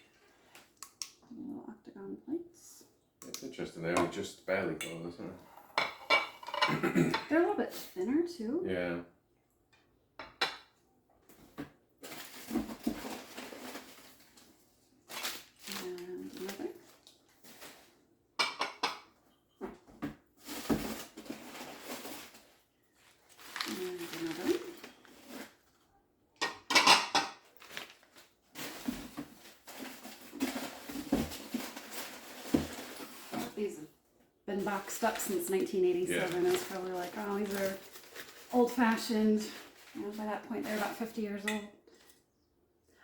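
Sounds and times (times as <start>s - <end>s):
glass dishes clinking: 5.8s - 7.3s
packing rustling and crinkling: 12.0s - 18.0s, 20.4s - 25.8s, 27.4s - 33.6s, 34.6s - 41.2s.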